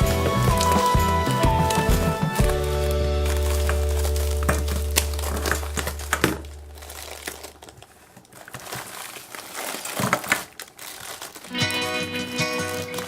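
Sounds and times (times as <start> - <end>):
background music: 0.0 - 5.6, 11.5 - 13.0
crinkling and crackling clicks: 0.0 - 13.0.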